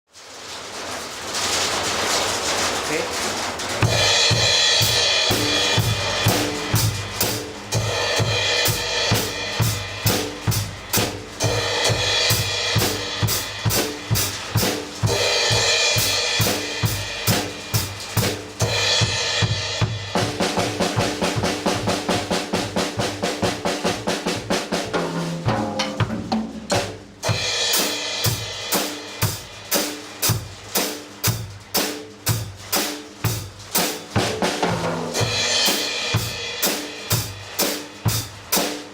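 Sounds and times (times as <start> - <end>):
drum kit beat: 3.8 - 38.9.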